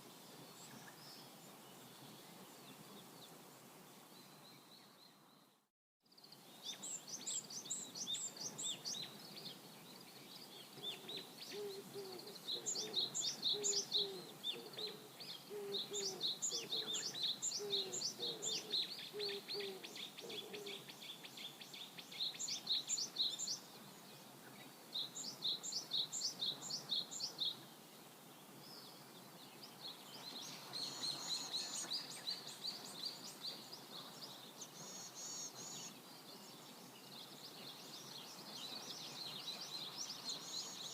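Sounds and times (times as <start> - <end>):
birds chirping: 6.2 - 27.7
lower bird call: 10.9 - 21.0.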